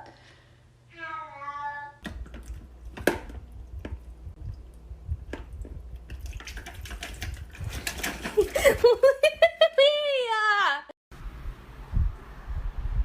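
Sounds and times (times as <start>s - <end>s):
low rumble: 3.4s - 6.2s.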